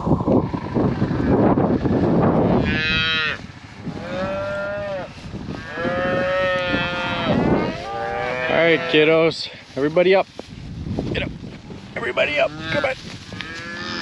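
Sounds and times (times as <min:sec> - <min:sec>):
loud rough low sound: 0:00.0 - 0:04.5
cattle mooing: 0:02.5 - 0:09.2, 0:12.2 - 0:14.0.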